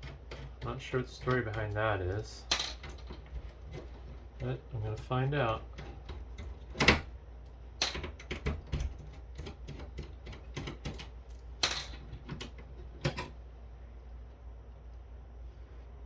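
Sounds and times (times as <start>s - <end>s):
parts rattling: 0.0s - 7.0s.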